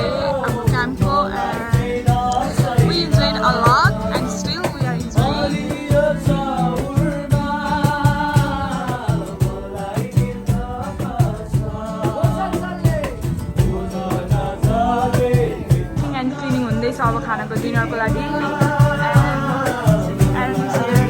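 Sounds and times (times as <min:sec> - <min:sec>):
song with sung melody and beat: 0:00.0 - 0:21.0.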